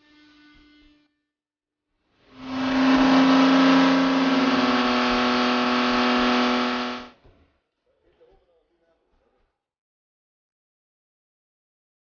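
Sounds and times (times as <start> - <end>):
sports car engine at high revs: 2.4 - 7.1.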